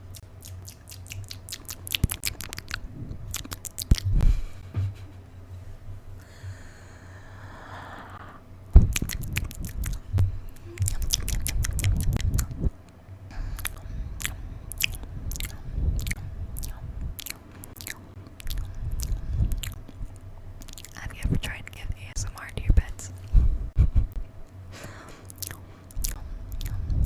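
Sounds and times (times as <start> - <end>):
sharp wet mouth clicks: 0.0 - 4.2, 8.8 - 21.8, 25.3 - 27.0
wet mouth smacking: 0.1 - 4.2, 8.8 - 12.8, 13.4 - 21.8, 25.2 - 27.0
soft breathy hiss: 4.0 - 17.2.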